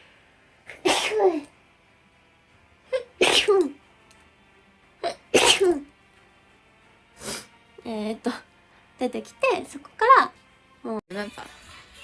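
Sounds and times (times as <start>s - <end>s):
person sneezing: 0.7s - 1.5s, 2.9s - 3.7s, 5.0s - 5.8s.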